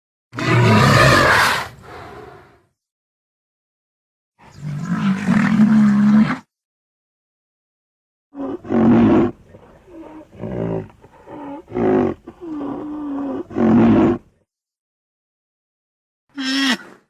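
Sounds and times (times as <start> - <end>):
creature roaring and bellowing: 0.4 - 2.6.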